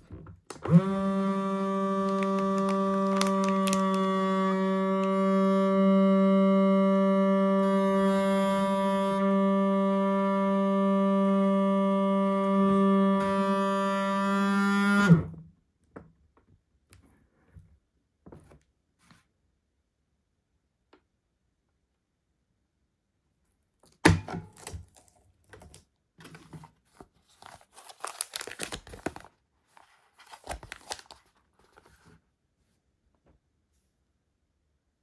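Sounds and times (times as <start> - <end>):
vacuum sealer pump humming: 0.5 - 15.2.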